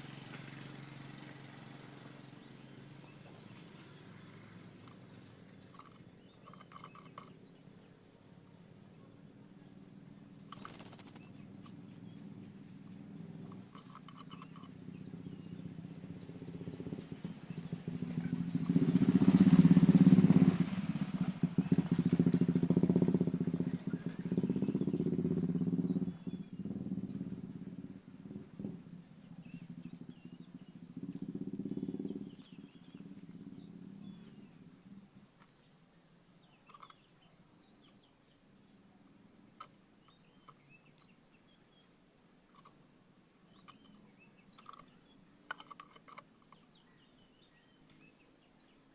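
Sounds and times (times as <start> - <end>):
vehicle engine passing: 0.0 - 8.0, 9.8 - 35.2
faint bird chirps: 0.0 - 48.9
insects trilling: 0.0 - 48.9.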